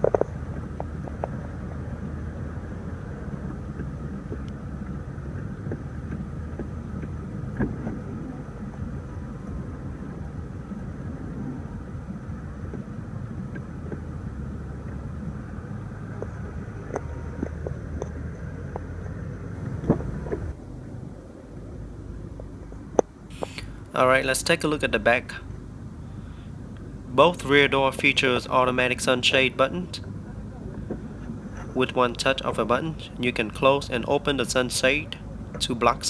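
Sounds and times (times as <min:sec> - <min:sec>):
car engine idling hum: 0:00.0 - 0:36.0.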